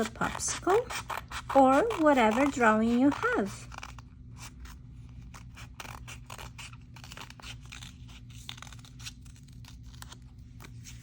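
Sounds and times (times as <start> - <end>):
low steady hum: 0.0 - 11.0
scissors snipping paper: 0.0 - 11.0.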